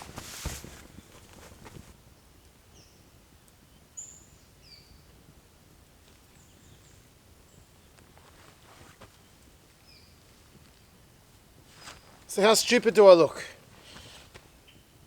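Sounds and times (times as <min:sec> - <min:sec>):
light rustling: 0:00.0 - 0:02.0, 0:07.9 - 0:09.5, 0:10.2 - 0:12.3, 0:13.6 - 0:14.6
birds chirping faintly: 0:00.8 - 0:15.0.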